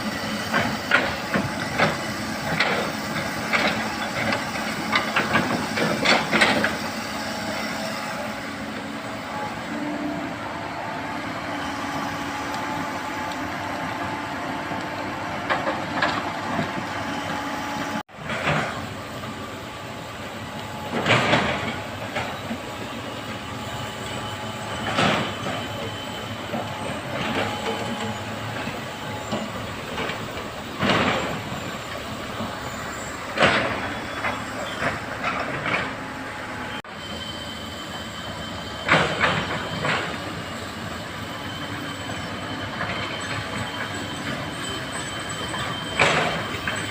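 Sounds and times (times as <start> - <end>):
excavator running: 0.0 - 46.9.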